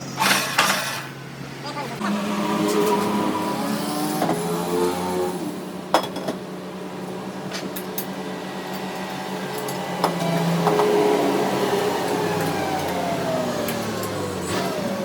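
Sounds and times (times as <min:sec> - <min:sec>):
machine motor humming: 0:08.5 - 0:15.0.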